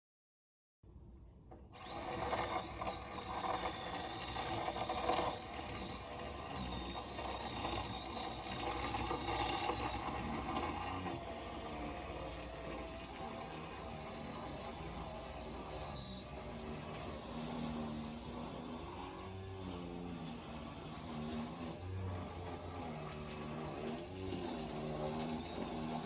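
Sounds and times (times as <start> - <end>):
small motor whining: 1.6 - 26.0.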